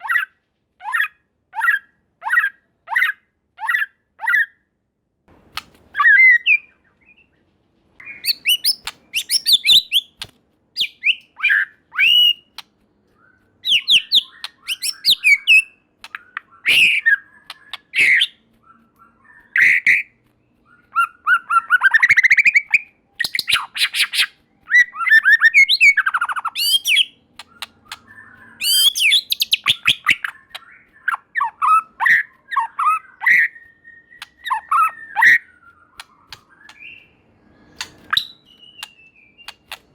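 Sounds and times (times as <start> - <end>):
bird singing whistled phrases: 5.9 - 7.4, 8.0 - 10.2, 10.8 - 12.6, 13.2 - 39.8
bird chattering rattles: 13.6 - 18.3.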